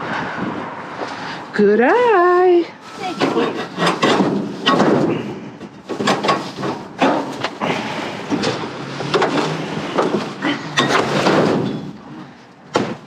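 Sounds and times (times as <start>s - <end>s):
scraping and rustling: 2.7s - 12.4s
scrap knocking and clattering: 2.9s - 13.0s.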